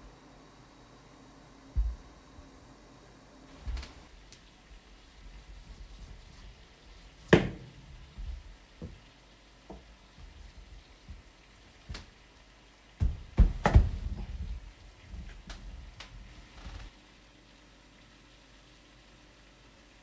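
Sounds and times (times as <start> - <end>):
kitchen knocks and taps: 1.8 - 2.0, 7.3 - 9.0, 13.0 - 14.6.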